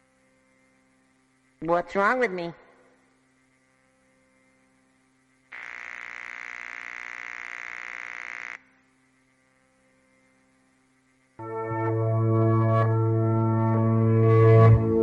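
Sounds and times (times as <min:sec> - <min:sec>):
low electrical hum: 0:00.0 - 0:15.0
harsh fluttering electronic buzz: 0:03.4 - 0:14.7.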